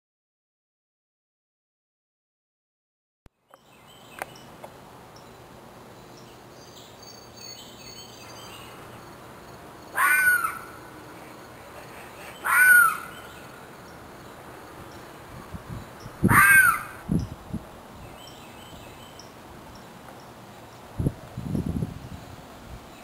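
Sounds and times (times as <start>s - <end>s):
small birds chirping: 3.4s - 21.1s
crow cawing: 9.9s - 10.8s, 12.4s - 13.3s, 16.3s - 17.0s.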